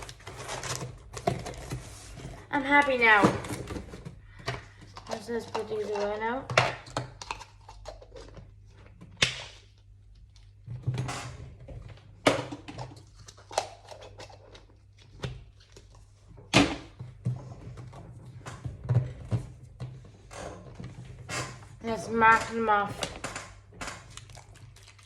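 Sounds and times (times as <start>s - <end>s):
packaging rustling: 0.0s - 2.5s.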